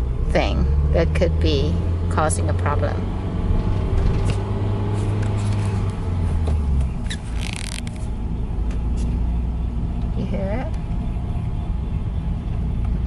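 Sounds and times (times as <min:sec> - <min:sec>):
engine and road drone: 0:00.0 - 0:13.0
faint wheel squeak: 0:05.0 - 0:08.1.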